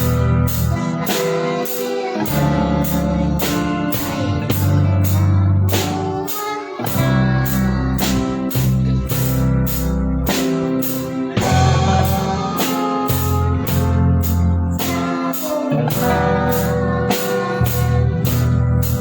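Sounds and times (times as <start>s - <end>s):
bass line: 0.0s - 1.2s, 2.2s - 19.0s
drum kit beat: 0.0s - 19.0s
guitar chords: 0.0s - 19.0s.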